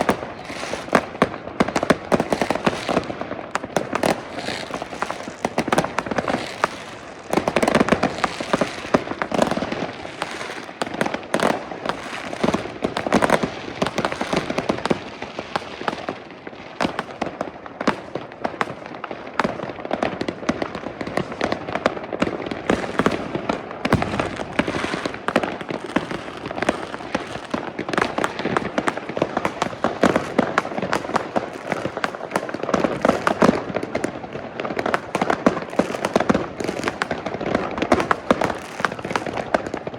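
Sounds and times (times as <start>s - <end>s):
fireworks and firecrackers crackling: 0.0s - 39.9s.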